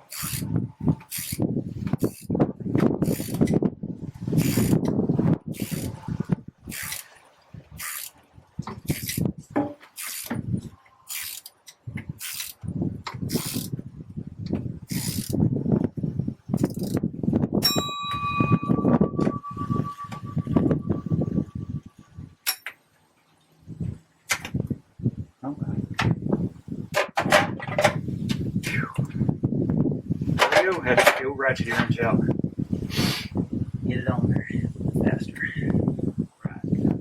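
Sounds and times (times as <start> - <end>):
ratchet wrench clicking: 0.0 - 0.4, 1.1 - 1.4, 2.0 - 2.3, 3.0 - 3.5, 4.4 - 4.8, 5.6 - 6.0, 6.7 - 7.1, 7.8 - 8.2, 8.9 - 9.2, 10.0 - 10.3, 11.1 - 11.6, 12.2 - 12.6, 13.3 - 13.7, 14.9 - 15.4, 16.6 - 17.0
steady high tone: 17.6 - 22.2.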